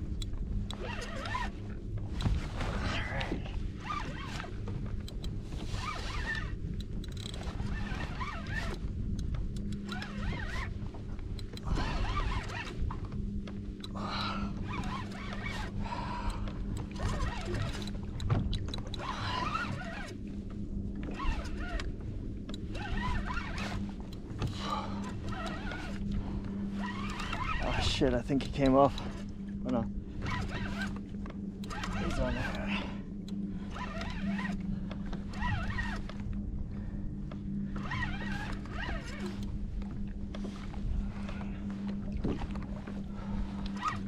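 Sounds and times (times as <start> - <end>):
steady low hum: 0.0 - 44.0
fishing reel cranking: 5.1 - 10.7, 13.8 - 20.2, 22.5 - 26.1, 26.8 - 29.2, 31.6 - 34.6.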